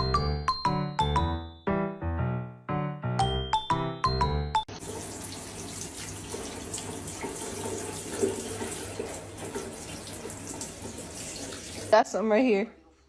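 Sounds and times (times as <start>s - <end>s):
running water hiss: 4.8s - 12.0s.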